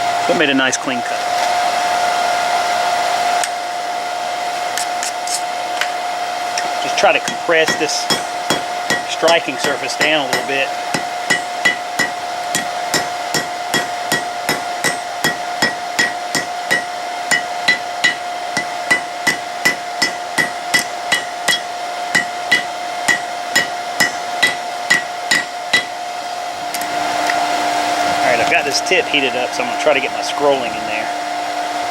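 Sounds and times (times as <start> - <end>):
steady hum: 0.0 - 31.9
hammer striking steel on anvil: 7.2 - 26.0.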